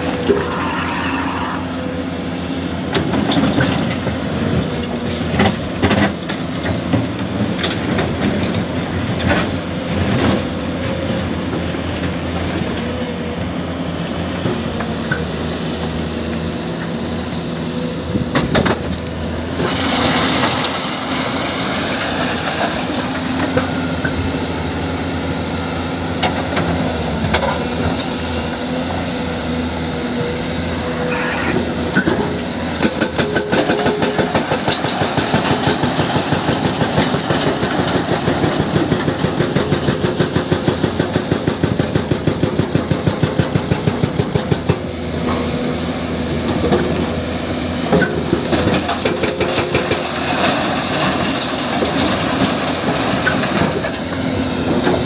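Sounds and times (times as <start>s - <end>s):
excavator diesel engine running: 0.0s - 55.0s
short rushing noise: 30.8s - 32.3s.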